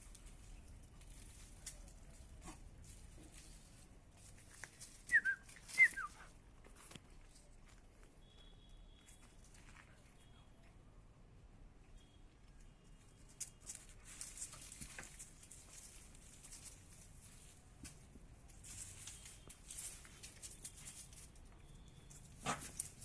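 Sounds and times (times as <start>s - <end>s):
dogs' paws scuffling on ground: 0.0s - 8.2s, 13.0s - 23.0s.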